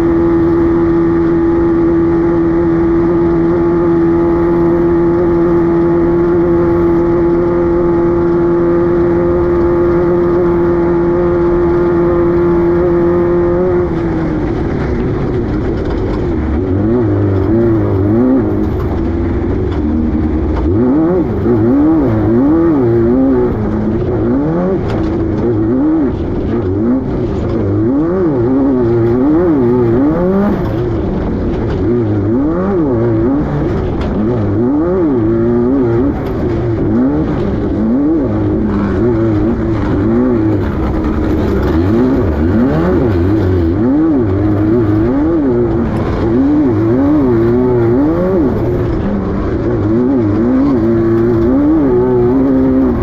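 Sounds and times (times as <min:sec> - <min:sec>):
race car engine revving: 0:00.0 - 0:53.0
knocks and rattles: 0:35.8 - 0:53.0.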